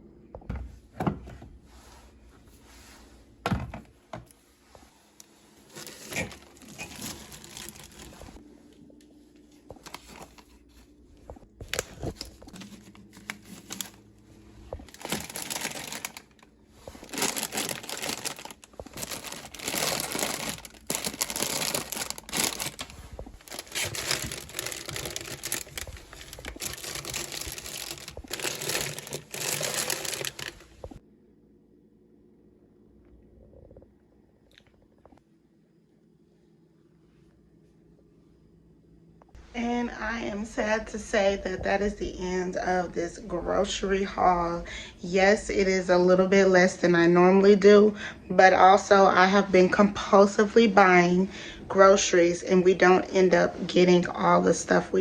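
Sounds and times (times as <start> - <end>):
items knocking when set down: 3.4 - 4.3
plastic bags crinkling and rustling: 5.5 - 8.4, 9.6 - 31.0.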